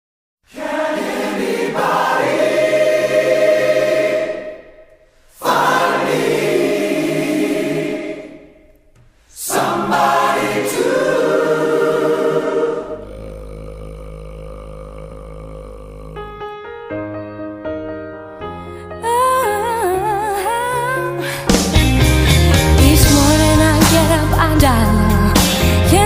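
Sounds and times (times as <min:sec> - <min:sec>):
choir singing held phrases: 0:00.5 - 0:16.3.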